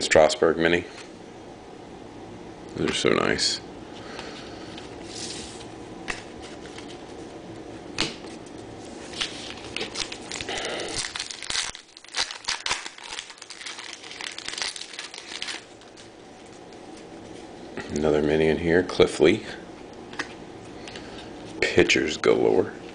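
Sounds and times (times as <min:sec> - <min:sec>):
cards being handled: 0:04.7 - 0:07.4
wrapper crinkling and tearing: 0:09.1 - 0:16.8.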